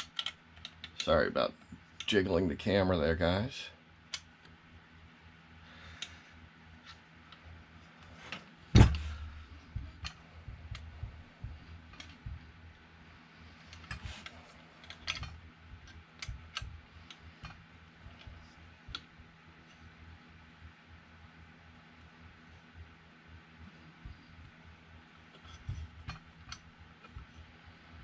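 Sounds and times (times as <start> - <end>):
loud knock: 8.8 - 11.6
small metal clicks and taps: 13.7 - 17.6.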